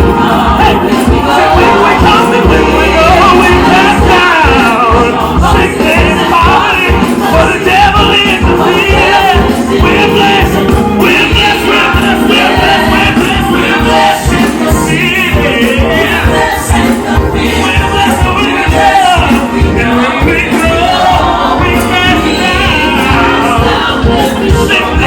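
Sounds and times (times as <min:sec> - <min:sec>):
choir singing with band: 0:00.0 - 0:25.0.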